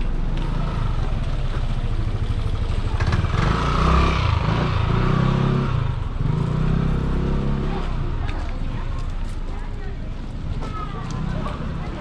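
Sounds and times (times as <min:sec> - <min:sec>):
motorcycle engine passing: 0:00.4 - 0:07.9.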